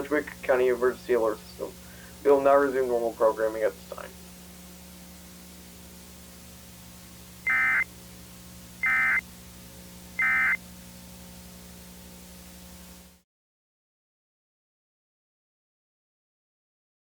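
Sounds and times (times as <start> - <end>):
steady low hum: 0.0 - 13.2
high-pitched digital data tones: 7.5 - 7.9, 8.8 - 9.2, 10.2 - 10.6.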